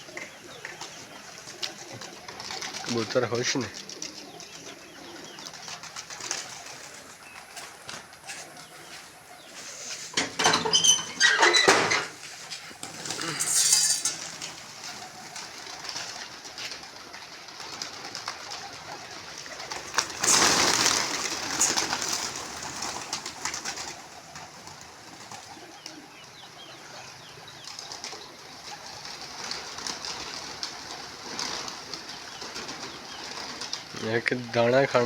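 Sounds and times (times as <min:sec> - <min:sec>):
pigeons cooing: 0:00.0 - 0:35.0.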